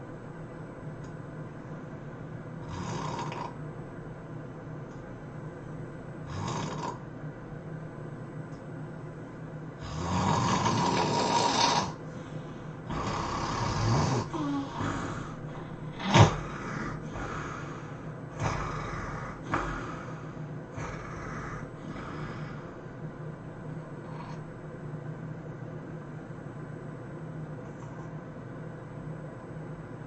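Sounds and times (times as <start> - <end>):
person snoring: 2.6 - 3.6, 6.3 - 7.0, 9.8 - 12.0, 12.8 - 22.8, 24.0 - 24.4
sharp snort: 16.0 - 17.7.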